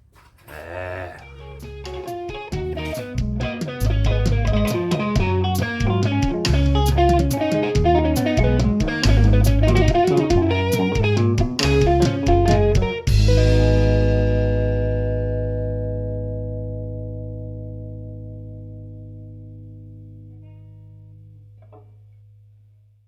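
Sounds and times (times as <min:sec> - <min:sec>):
guitar with bass and drums: 0:01.4 - 0:21.9.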